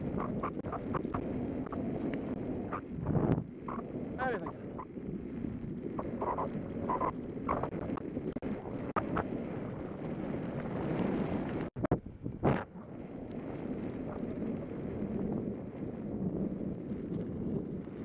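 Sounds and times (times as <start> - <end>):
bicycle rolling on a trail: 0.0 - 18.0
wind buffeting microphone: 0.0 - 18.0.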